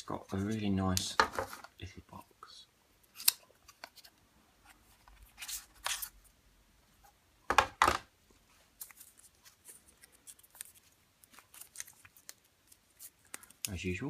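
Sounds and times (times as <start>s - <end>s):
packaging rustling and tearing: 8.7s - 13.9s.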